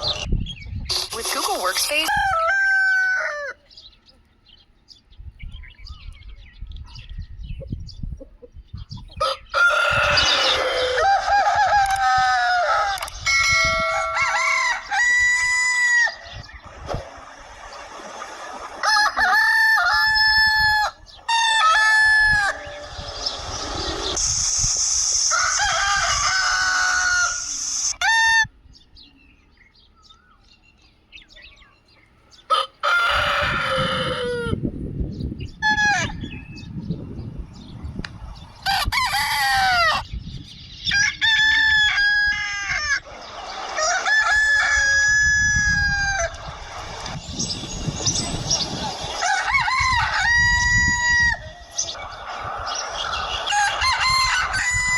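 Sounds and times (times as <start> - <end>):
roosters crowing: 0.0 - 0.3, 1.4 - 4.0, 9.1 - 28.8, 31.8 - 34.7, 35.5 - 36.7, 38.4 - 40.2, 40.8 - 54.9
hen clucking: 0.0 - 3.7, 7.6 - 28.5, 48.1 - 54.9.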